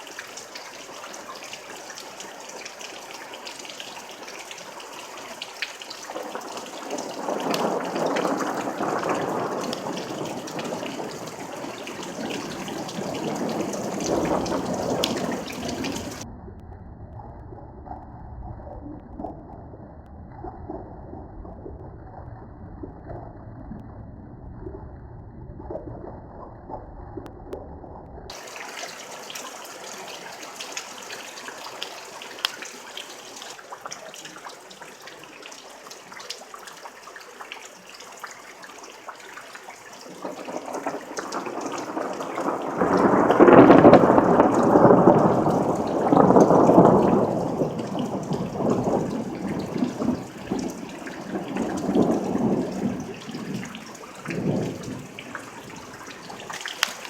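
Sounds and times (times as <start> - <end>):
steady rain hiss: 0.0 - 16.2, 28.3 - 57.0
rolling thunder: 6.1 - 16.3, 40.1 - 56.6.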